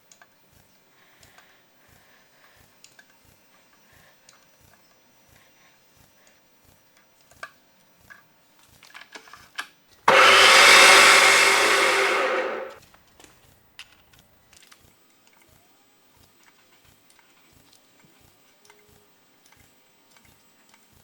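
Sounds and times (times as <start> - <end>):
power tool whirring: 10.1 - 12.8.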